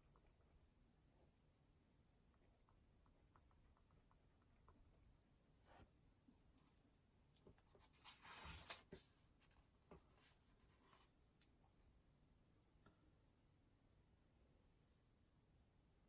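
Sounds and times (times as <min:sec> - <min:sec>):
pen scratching on paper: 0:07.7 - 0:09.1.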